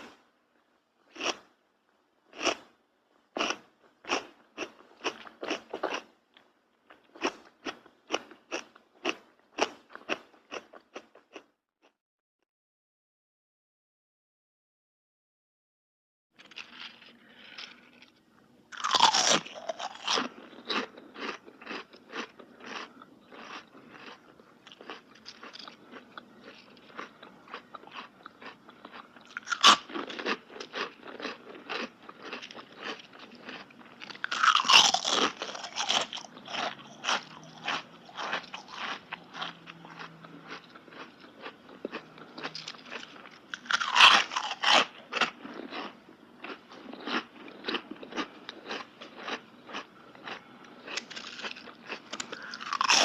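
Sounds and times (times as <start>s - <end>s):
person biting crunchy food: 18.7s - 53.0s.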